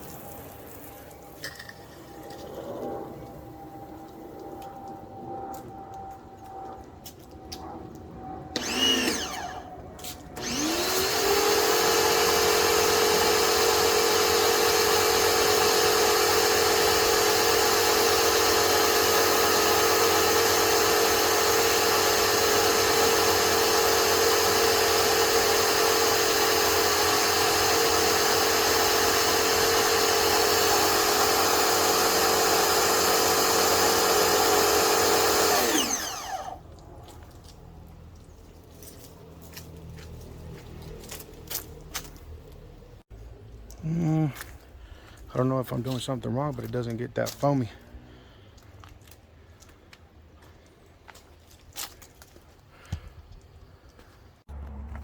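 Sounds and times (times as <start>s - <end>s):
pressure washer motor: 8.5s - 36.7s.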